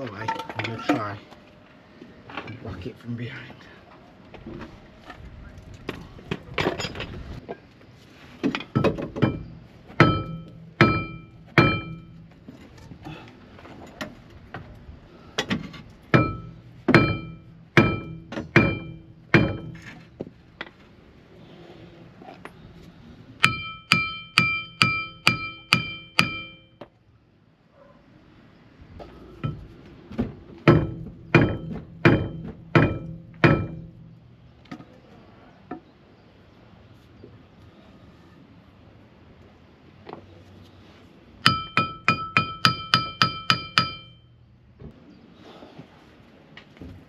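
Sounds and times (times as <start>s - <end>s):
hammer striking metal: 8.7s - 12.3s, 16.1s - 19.8s, 23.4s - 26.8s, 30.7s - 34.1s, 41.4s - 44.2s.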